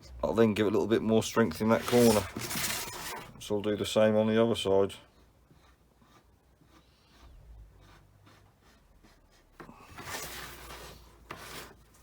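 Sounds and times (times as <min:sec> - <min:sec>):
pen scratching on plastic: 0:05.2 - 0:11.8.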